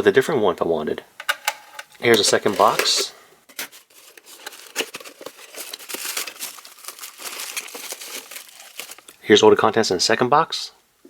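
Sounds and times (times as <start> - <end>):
packaging rustling and crinkling: 1.2 - 9.2.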